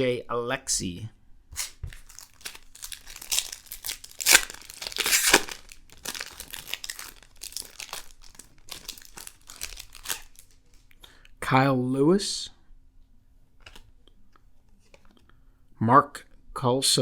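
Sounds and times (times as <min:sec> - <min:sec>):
wrapper tearing and crinkling: 0:01.6 - 0:10.9.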